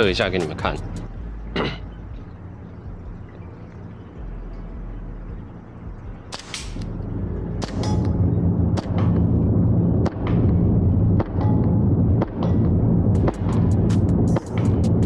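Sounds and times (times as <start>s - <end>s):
low steady drone: 0.0s - 15.0s
airsoft pistol shots: 6.3s - 6.9s, 7.6s - 8.2s.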